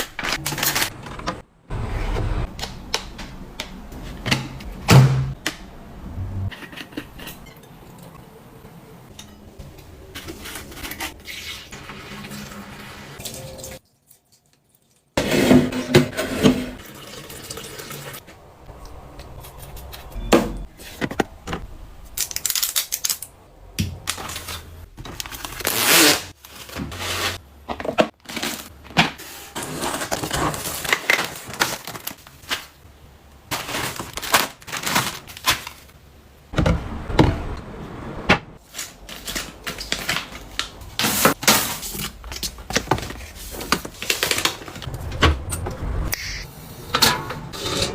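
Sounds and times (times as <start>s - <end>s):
containers and packaging handled: 19.2s - 32.8s, 33.5s - 36.0s, 38.6s - 44.9s.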